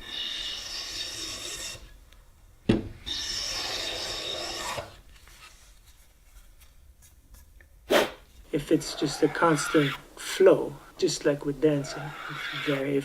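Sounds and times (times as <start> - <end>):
hand tool scraping wood: 3.1 - 5.6, 7.9 - 13.0.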